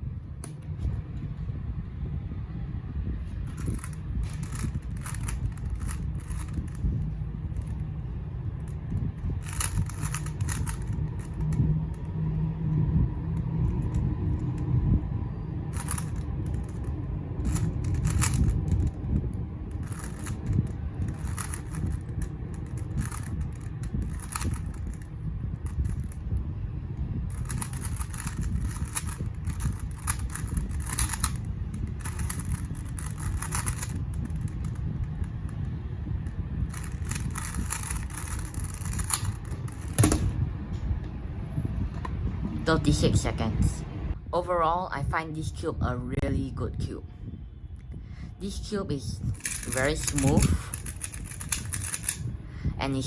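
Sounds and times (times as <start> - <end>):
steady low rumble: 0.0 - 53.0
plastic puzzle cube clicking: 3.5 - 7.0, 9.4 - 11.6, 15.7 - 19.0, 19.7 - 26.2, 27.3 - 35.4, 36.7 - 40.2, 49.3 - 52.3.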